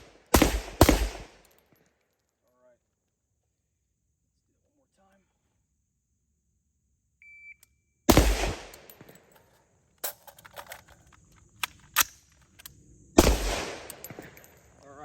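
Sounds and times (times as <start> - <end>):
rifle shot: 0.0 - 1.4, 8.1 - 9.2, 13.2 - 14.6.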